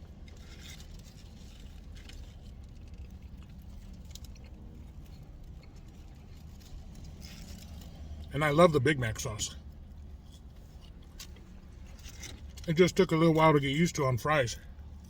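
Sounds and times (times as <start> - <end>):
close-up chewing: 0.0 - 8.3.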